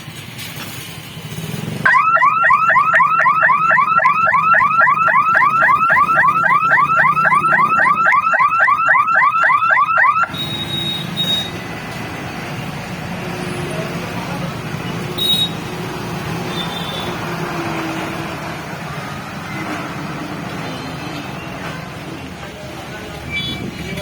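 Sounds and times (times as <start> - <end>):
electronic warning siren whooping: 1.9 - 10.4.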